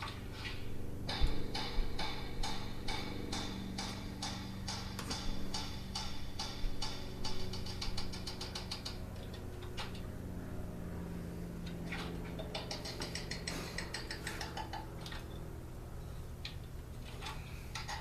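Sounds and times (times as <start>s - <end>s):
low electric hum: 0.0s - 18.0s
rapid fine ticking: 12.4s - 15.1s.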